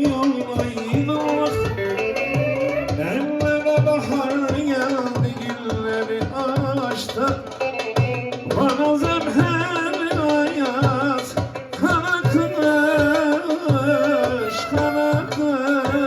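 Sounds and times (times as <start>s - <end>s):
drum beat: 0.0s - 16.0s
vibrato melody line: 1.2s - 3.3s, 12.3s - 16.0s.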